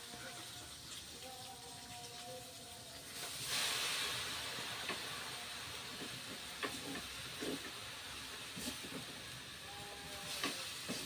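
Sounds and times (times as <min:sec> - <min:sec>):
vegetables sizzling in hot pan: 0:02.8 - 0:11.0.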